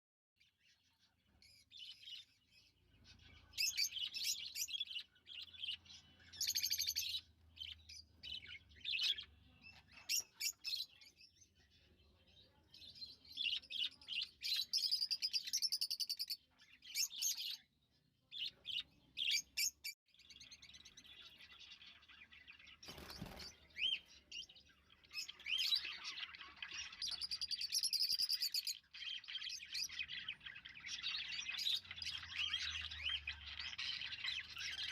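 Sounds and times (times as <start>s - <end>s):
lovebirds chirping and twittering: 0.4s - 34.9s.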